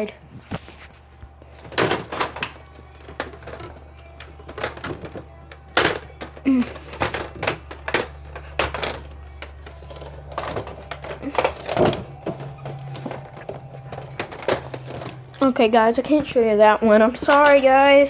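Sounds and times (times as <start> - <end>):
hard plastic clacking: 1.5 - 18.0.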